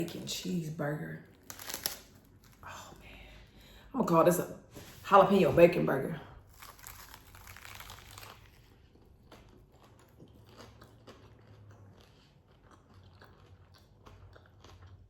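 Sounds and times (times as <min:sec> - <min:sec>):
person chewing crunchy food: 0:06.4 - 0:15.0.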